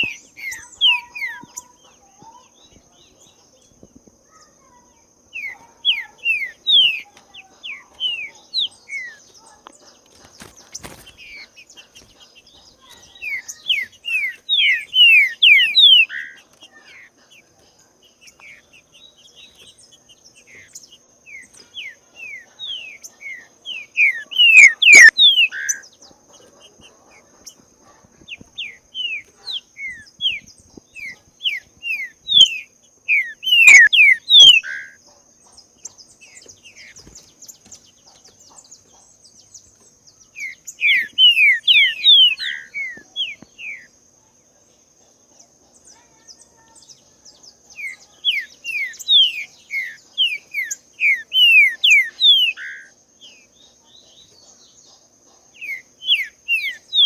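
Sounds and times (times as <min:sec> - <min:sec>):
bird singing whistled notes: 0:00.0 - 0:03.7, 0:12.7 - 0:16.4, 0:20.6 - 0:25.8, 0:28.3 - 0:35.0, 0:40.2 - 0:43.9, 0:47.4 - 0:53.5.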